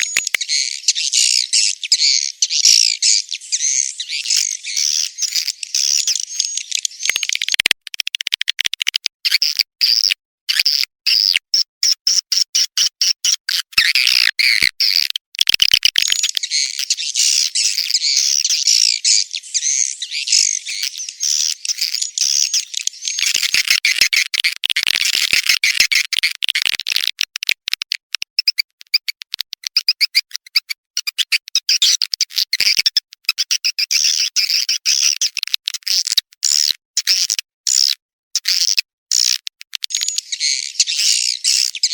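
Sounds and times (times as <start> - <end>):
swiftlets twittering: 0.0 - 7.6, 16.0 - 23.9, 39.9 - 41.9.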